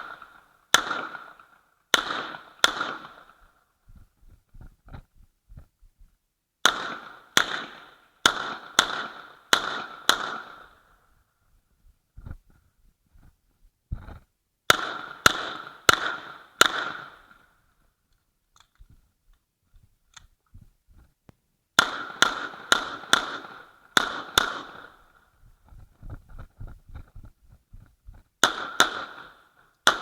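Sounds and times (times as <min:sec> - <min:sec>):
pistol shots with ringing tail: 0:00.0 - 0:03.6, 0:06.6 - 0:11.0, 0:14.7 - 0:17.5, 0:21.8 - 0:25.3, 0:28.4 - 0:30.0.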